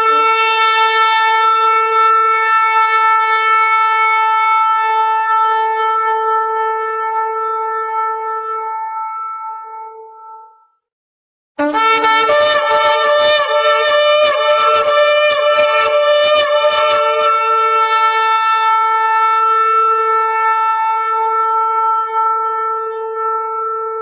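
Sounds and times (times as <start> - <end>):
ram's horn blowing: 0.0 - 6.2, 11.6 - 24.0.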